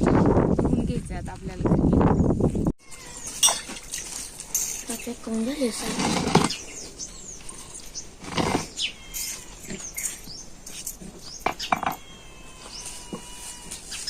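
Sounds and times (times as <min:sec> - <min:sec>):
small birds chirping: 0:02.1 - 0:14.0
water splashing: 0:03.3 - 0:05.0.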